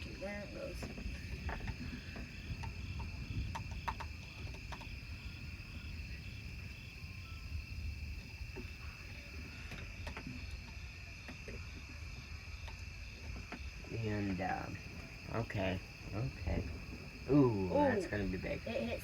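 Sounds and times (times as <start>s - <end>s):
crickets chirping: 0.0s - 19.0s
low constant rumble: 0.0s - 19.0s.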